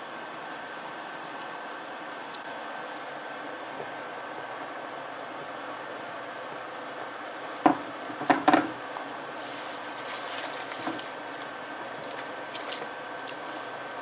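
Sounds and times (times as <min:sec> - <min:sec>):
steady hiss: 0:00.0 - 0:14.0
soft rustling: 0:09.0 - 0:14.0.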